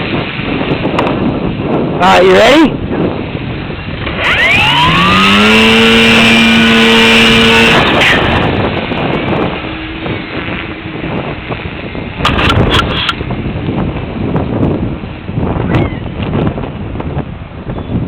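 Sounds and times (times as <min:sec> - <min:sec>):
wind buffeting microphone: 0:00.0 - 0:18.0
electric motor whine: 0:03.8 - 0:13.2.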